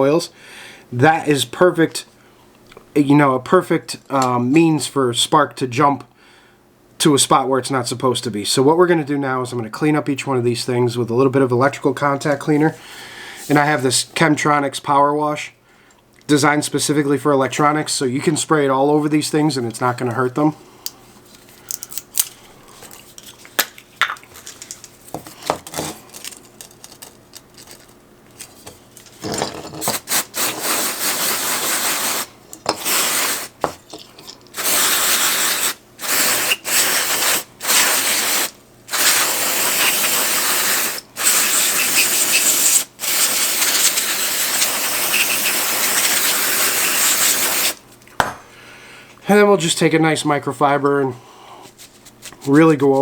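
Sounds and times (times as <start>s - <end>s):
aerosol can spraying: 30.0s - 33.6s, 34.6s - 47.8s.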